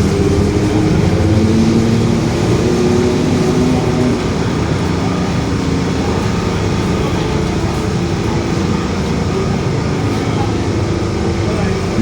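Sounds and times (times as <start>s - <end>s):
bus diesel engine running: 0.0s - 12.0s
road noise: 0.0s - 12.0s.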